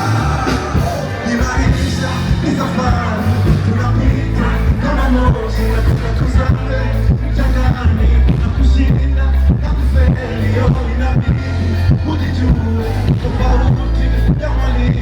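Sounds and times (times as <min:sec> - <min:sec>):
heavy bass line: 0:00.0 - 0:15.0
person singing: 0:00.0 - 0:15.0
steady beat: 0:00.0 - 0:15.0.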